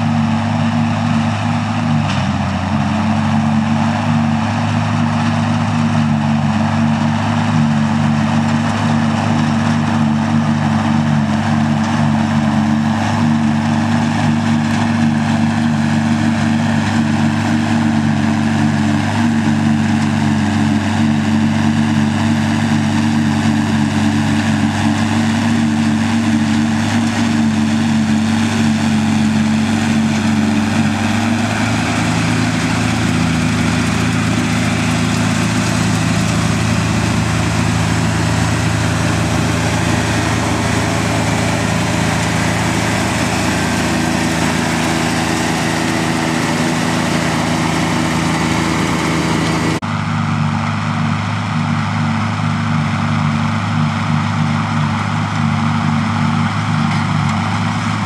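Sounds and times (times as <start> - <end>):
tractor diesel engine running: 0.0 - 58.0.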